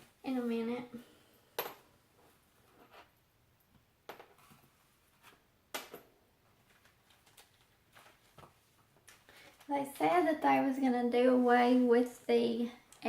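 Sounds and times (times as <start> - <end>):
jewelry packaging clicks and rustles: 6.6 - 9.8.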